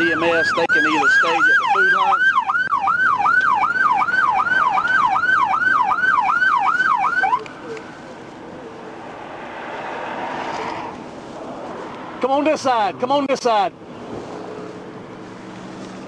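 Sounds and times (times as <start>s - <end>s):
police siren yelping: 0.0s - 7.6s
road and wind noise: 0.0s - 16.0s.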